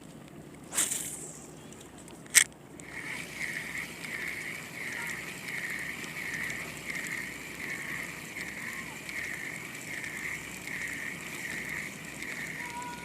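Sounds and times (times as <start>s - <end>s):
fishing reel click: 2.3s - 13.0s
fishing reel whirring: 2.8s - 13.0s.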